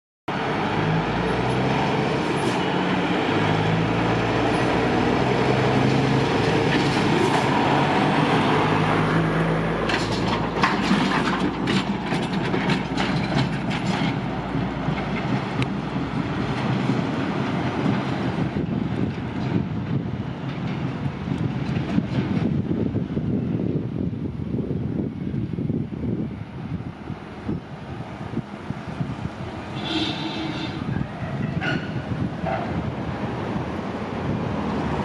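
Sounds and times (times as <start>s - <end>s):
rattling clanks: 9.8s - 14.3s.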